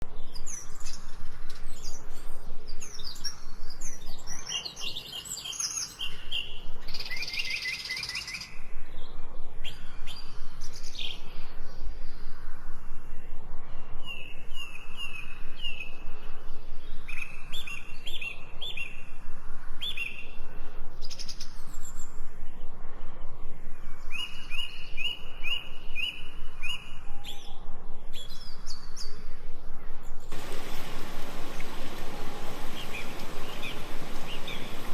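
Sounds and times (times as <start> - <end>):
birds singing and chirping: 0.1 - 12.2, 30.0 - 34.9.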